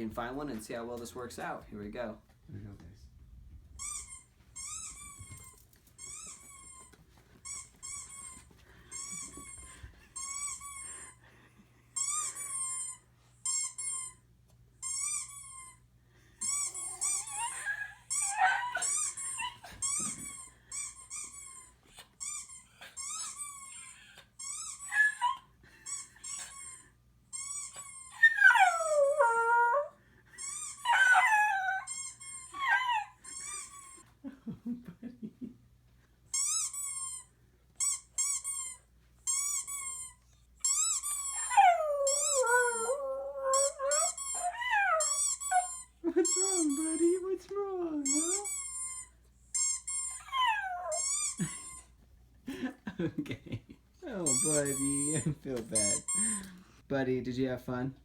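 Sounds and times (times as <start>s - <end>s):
squeaky toy squeaks: 3.8s - 11.1s, 12.0s - 14.2s, 14.8s - 15.8s, 16.4s - 29.5s, 30.4s - 34.0s, 36.3s - 47.3s, 48.0s - 52.0s, 54.1s - 56.5s
dog whining: 3.8s - 11.2s, 16.4s - 34.1s, 36.4s - 52.0s, 54.1s - 56.6s.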